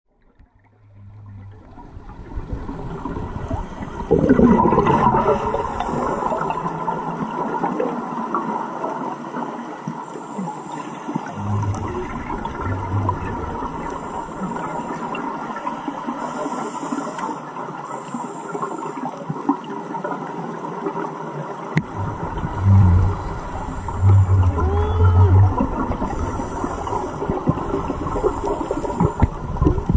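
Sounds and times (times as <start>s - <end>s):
water rushing: 0.6s - 18.8s, 20.0s - 29.9s
low thumps: 11.4s - 14.2s, 21.8s - 27.8s.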